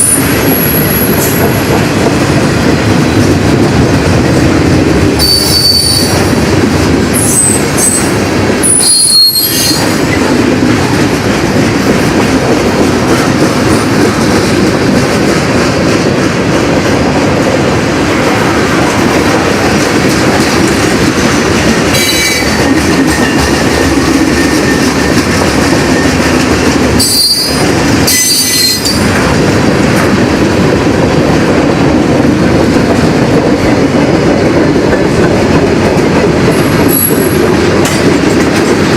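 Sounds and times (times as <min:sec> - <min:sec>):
freight train rumbling on rails: 0:00.0 - 0:38.9
high-pitched wheel squeals: 0:05.2 - 0:06.2, 0:07.2 - 0:09.9, 0:27.0 - 0:29.0.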